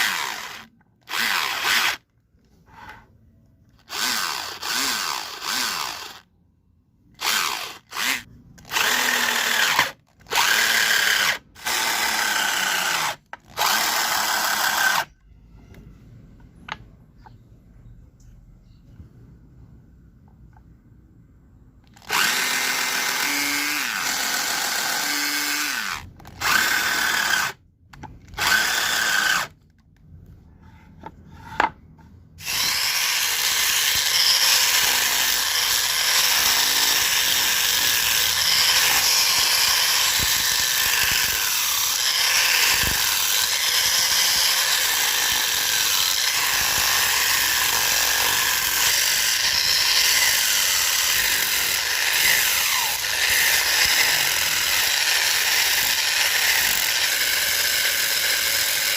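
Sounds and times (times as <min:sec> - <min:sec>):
electric power tool on wood: 0:00.0 - 0:02.0, 0:03.8 - 0:06.2, 0:07.2 - 0:15.1, 0:22.0 - 0:27.6, 0:28.4 - 0:29.5, 0:32.4 - 0:58.9.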